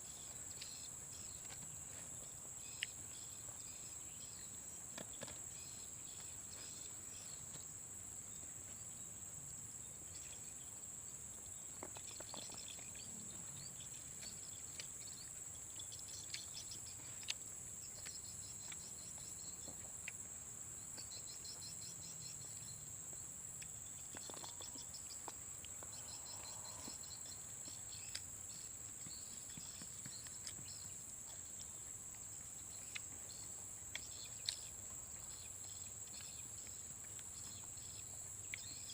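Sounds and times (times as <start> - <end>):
rapid pulsing insect chirps: 0.0 - 38.9
insects high-pitched drone: 11.4 - 38.9.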